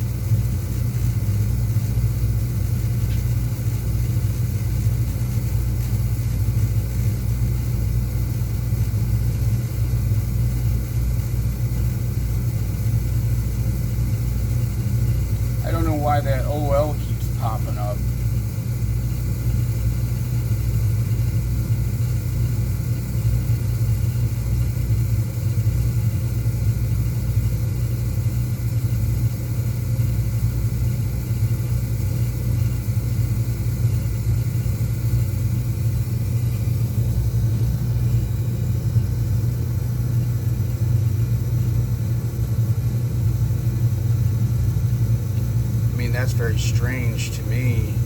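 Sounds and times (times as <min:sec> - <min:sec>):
oil burner rumbling: 0:00.0 - 0:48.0.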